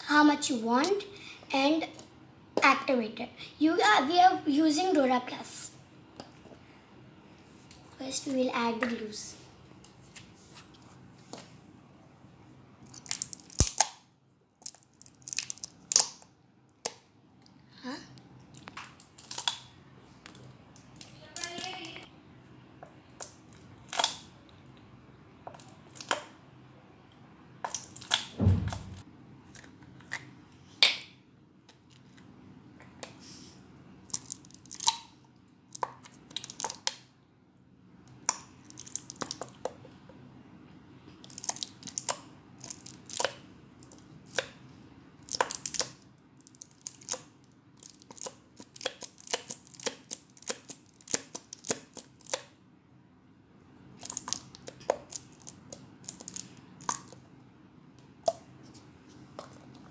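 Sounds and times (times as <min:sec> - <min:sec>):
heavy thump: 0:28.4 - 0:29.0.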